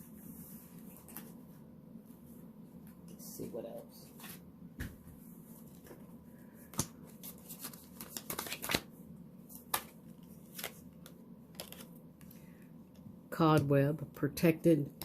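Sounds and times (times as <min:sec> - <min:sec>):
cards rustling and shuffling: 0:00.6 - 0:01.4, 0:05.5 - 0:12.6
card snaps and taps: 0:06.7 - 0:07.0, 0:09.6 - 0:11.9.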